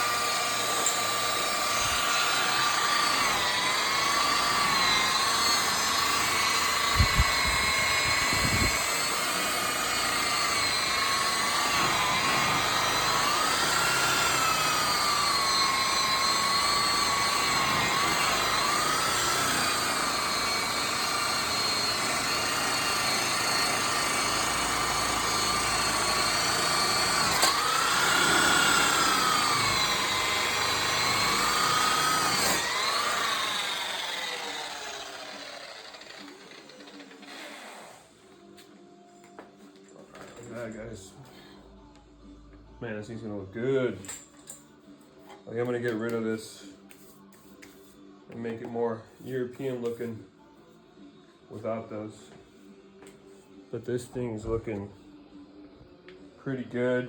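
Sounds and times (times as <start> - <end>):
electric polisher whining: 0.0 - 38.0.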